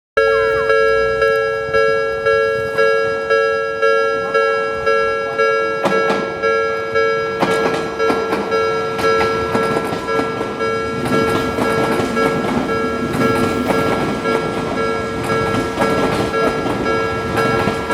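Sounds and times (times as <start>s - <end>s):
level-crossing alarm two-tone ding: 0.2s - 17.9s
train wheels clacking over rail joints: 5.8s - 6.5s, 7.3s - 17.9s.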